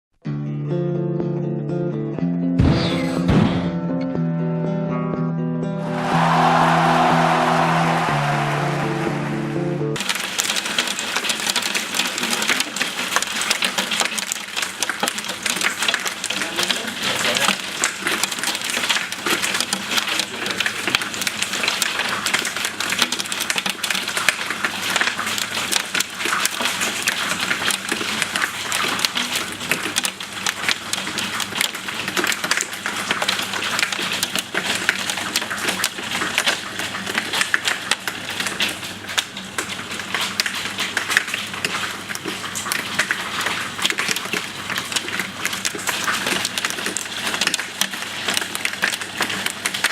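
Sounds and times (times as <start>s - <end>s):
hiss of falling ice and rain: 10.0s - 31.1s
hail clattering: 10.0s - 49.9s.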